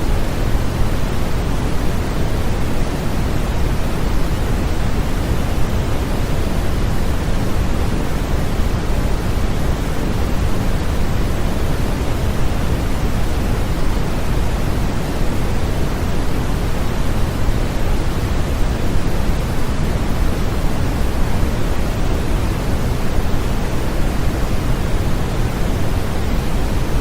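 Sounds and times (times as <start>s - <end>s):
steady white noise hiss: 0.0s - 27.0s.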